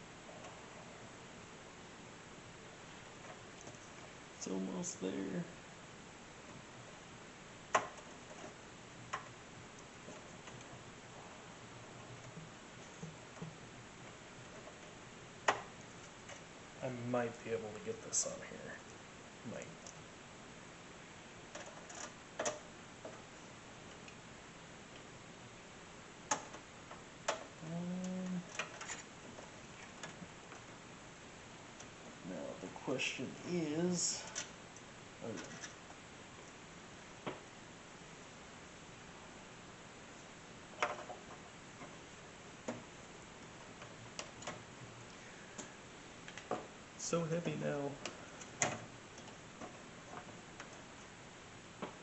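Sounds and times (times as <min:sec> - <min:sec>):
low steady hiss: 0:00.0 - 0:52.0.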